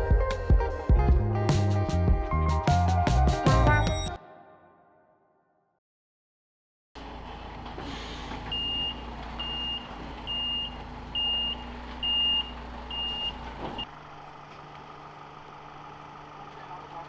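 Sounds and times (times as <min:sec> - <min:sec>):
low engine rumble: 0:07.0 - 0:17.0
vehicle reversing alarm beeping: 0:08.0 - 0:14.3.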